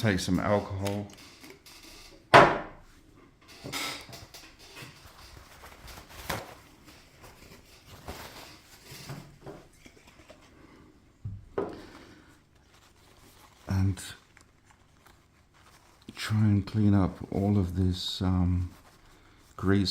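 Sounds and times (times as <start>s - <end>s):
cloth rubbing and rustling: 4.5s - 10.8s, 12.4s - 19.9s.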